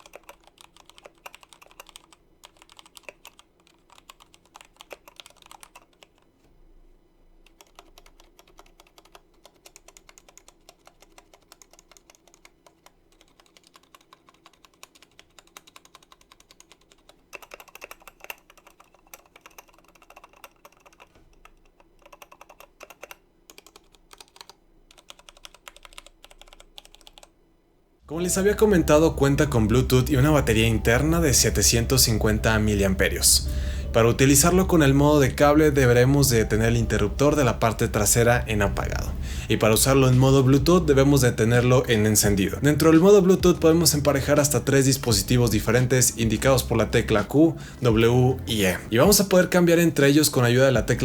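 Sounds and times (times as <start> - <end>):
mechanical keyboard typing: 0.0 - 6.3, 7.4 - 27.3.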